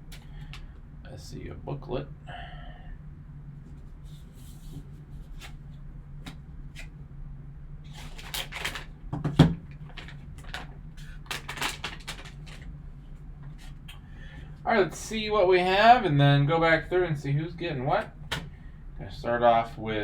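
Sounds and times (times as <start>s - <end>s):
low steady hum: 0.0s - 20.0s
cards sliding and rubbing: 3.7s - 6.9s, 7.9s - 8.9s
light clicks of card packaging: 7.9s - 8.9s, 9.8s - 12.7s.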